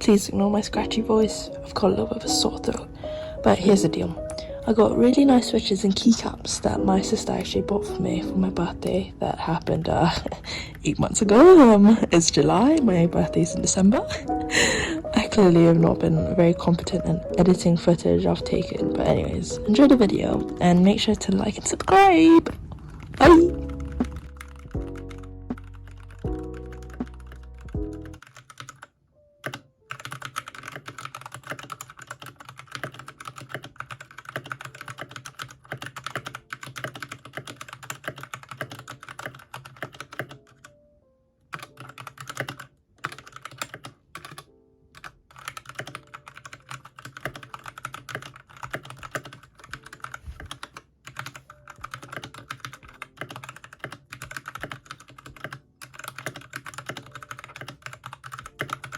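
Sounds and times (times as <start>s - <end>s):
background music: 0.0s - 58.9s
typing on mechanical keyboard: 22.5s - 40.8s, 41.5s - 58.9s.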